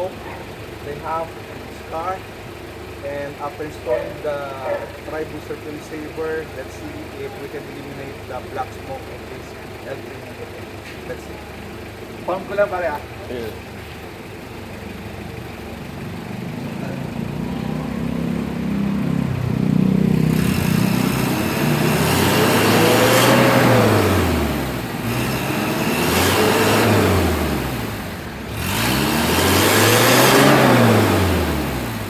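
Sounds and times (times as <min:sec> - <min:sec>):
diesel engine idling and revving: 0:00.0 - 0:32.0.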